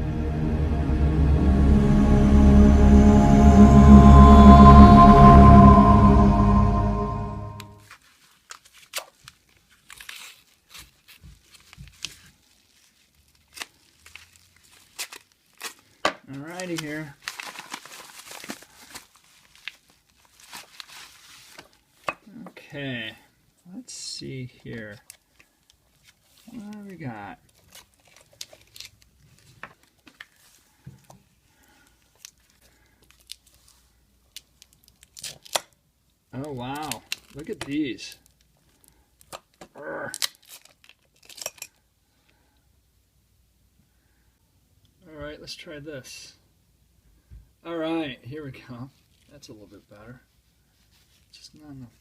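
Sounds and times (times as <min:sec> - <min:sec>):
intro music: 0:00.0 - 0:07.8
tape tearing and crinkling: 0:08.0 - 0:15.9, 0:16.6 - 0:21.8, 0:27.5 - 0:30.4, 0:34.6 - 0:35.8, 0:40.2 - 0:41.7
packaging clicks and rustles: 0:16.6 - 0:21.1, 0:36.7 - 0:41.7.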